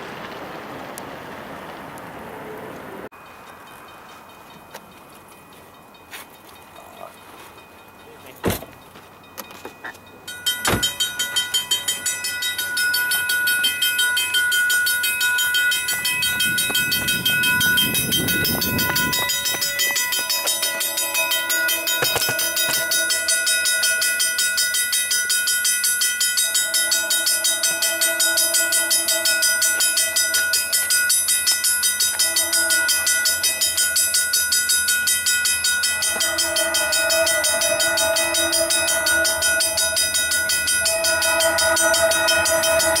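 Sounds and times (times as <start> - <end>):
crossing bell ringing: 3.1 - 43.0
locomotive horn: 26.4 - 30.6, 32.0 - 33.7, 36.0 - 43.0
low rushing swell: 36.2 - 43.0.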